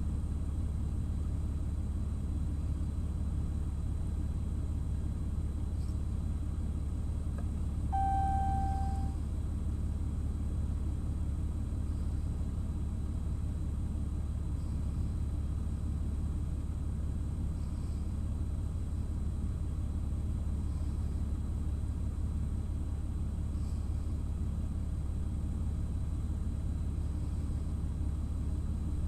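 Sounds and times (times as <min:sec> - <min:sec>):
thin high-pitched whine: 0:07.9 - 0:09.2.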